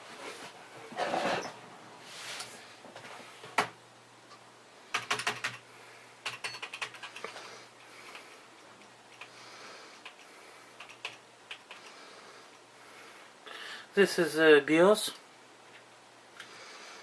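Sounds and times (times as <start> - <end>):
keyboard keys clicking: 4.9 - 5.6, 6.2 - 7.4, 10.8 - 11.9.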